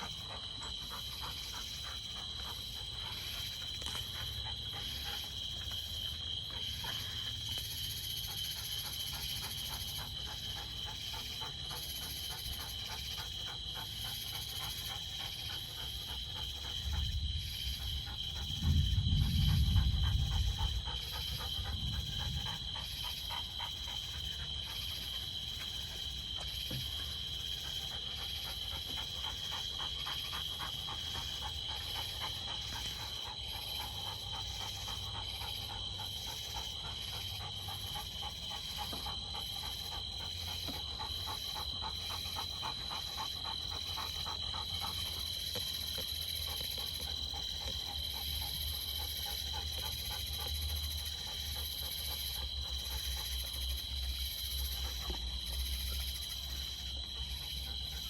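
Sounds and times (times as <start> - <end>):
insects trilling: 0.0 - 58.0
distant thunder rumble: 18.6 - 22.6.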